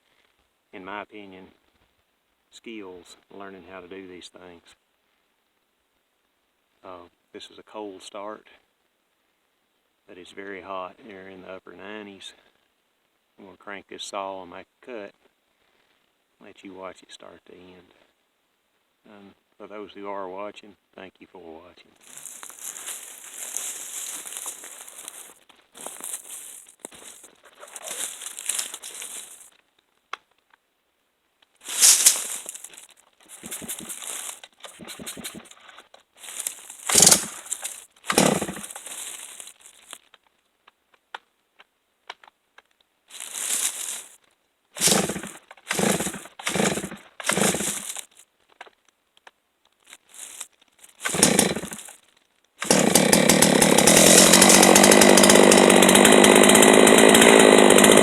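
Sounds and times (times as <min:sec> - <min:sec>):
chainsaw engine running: 0:22.1 - 0:29.5, 0:31.7 - 0:35.5, 0:36.2 - 0:39.5, 0:43.1 - 0:44.1, 0:44.8 - 0:48.1, 0:51.0 - 0:51.9, 0:52.6 - 0:58.0
chainsaw pull-cord pulls: 0:22.1 - 0:29.5, 0:31.7 - 0:39.9, 0:43.1 - 0:44.1, 0:44.8 - 0:48.2, 0:49.9 - 0:52.0, 0:52.6 - 0:58.0.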